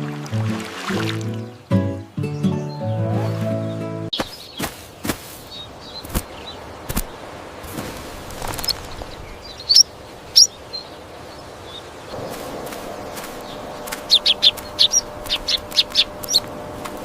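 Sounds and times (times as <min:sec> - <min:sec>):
high bird chirps: 0:08.4 - 0:10.8, 0:13.2 - 0:16.5.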